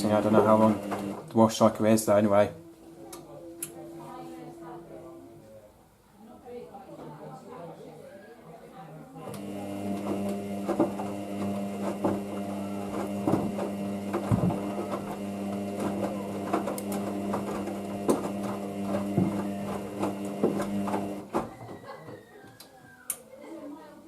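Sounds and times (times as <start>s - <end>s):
washing machine motor humming: 0.0s - 2.6s, 9.3s - 21.4s.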